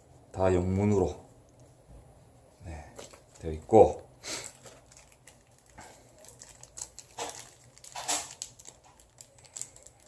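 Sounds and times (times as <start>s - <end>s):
paper rustling and crinkling: 2.9s - 3.7s, 4.4s - 10.0s.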